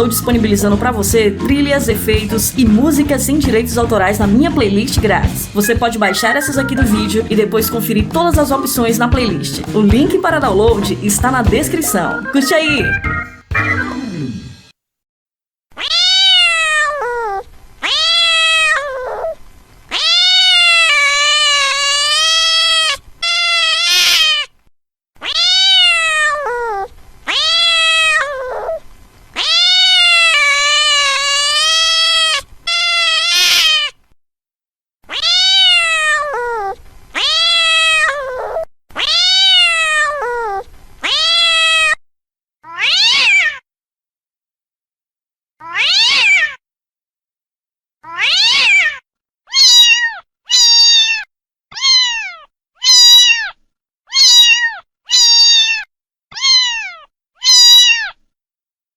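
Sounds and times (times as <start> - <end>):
cat meowing: 15.7 - 24.4, 25.2 - 28.8, 29.4 - 34.0, 35.1 - 42.0, 42.6 - 43.6, 45.6 - 46.6, 48.0 - 58.2.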